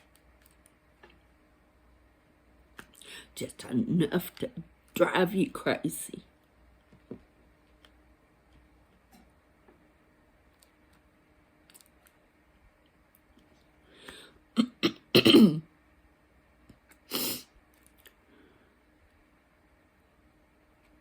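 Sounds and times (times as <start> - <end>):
woman clearing her throat: 14.6 - 15.7
woman coughing: 14.6 - 15.7.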